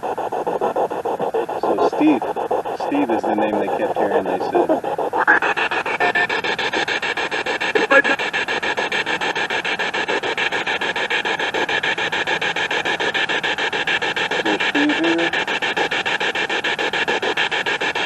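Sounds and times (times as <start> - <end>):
pulsing radio static: 0.0 - 18.0
snatch of broadcast sound: 1.3 - 6.9.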